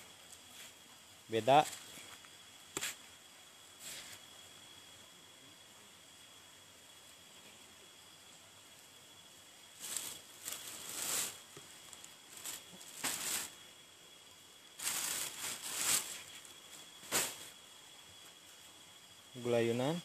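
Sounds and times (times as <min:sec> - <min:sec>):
night insects droning: 0:00.0 - 0:20.0
rustling: 0:09.7 - 0:13.6, 0:14.8 - 0:17.6.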